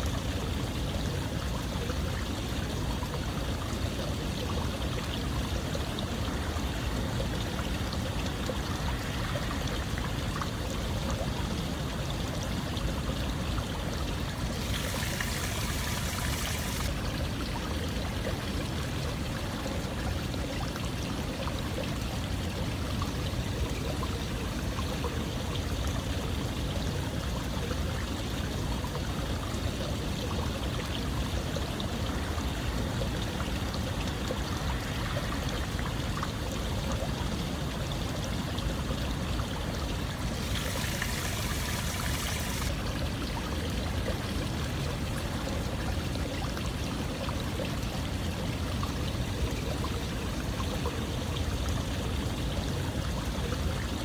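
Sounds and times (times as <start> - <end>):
running water flowing: 2.0 - 25.2, 32.0 - 48.9.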